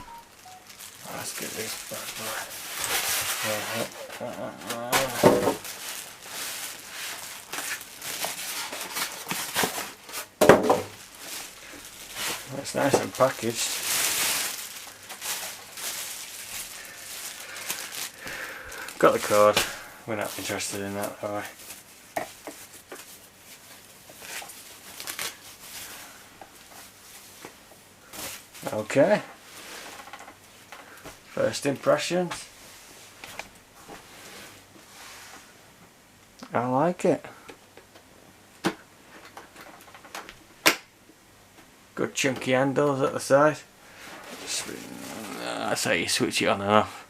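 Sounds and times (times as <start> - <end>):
packaging crinkling and rustling: 0.0 - 29.2.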